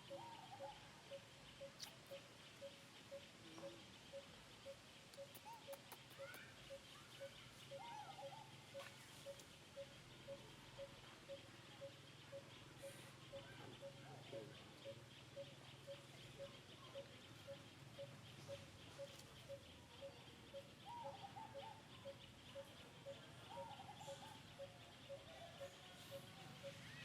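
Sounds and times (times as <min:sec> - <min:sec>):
repeated piping animal call: 0:00.0 - 0:27.0.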